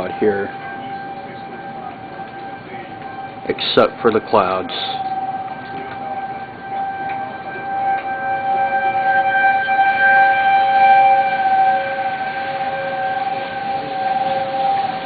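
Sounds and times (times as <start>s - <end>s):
two-pitch tornado siren: 0.0s - 15.0s.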